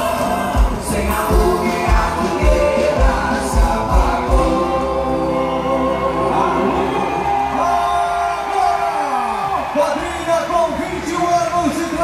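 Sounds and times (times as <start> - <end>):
bass drum beat: 0.0 - 5.4
sustained melody: 2.5 - 7.7.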